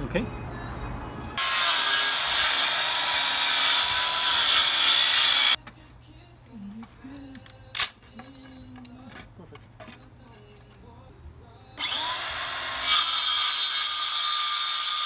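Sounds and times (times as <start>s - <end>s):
power saw cutting wood: 1.4s - 5.6s, 11.8s - 15.0s.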